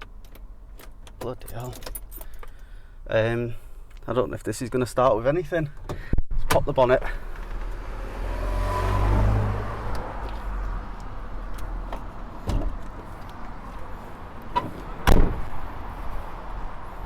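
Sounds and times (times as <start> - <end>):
traffic rumbling: 0.0 - 17.0
clicks and knocks on a van: 11.0 - 15.6
loud thump: 12.4 - 12.8, 14.6 - 15.6.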